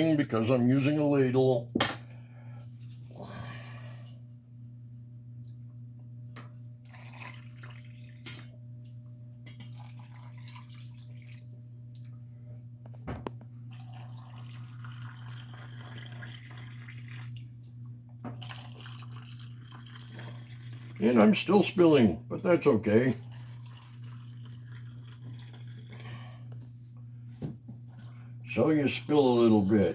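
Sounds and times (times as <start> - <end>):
steady low hum: 0.0 - 29.9
brine trickling into jars: 6.9 - 8.4, 9.6 - 12.1, 13.7 - 17.7, 18.4 - 26.6.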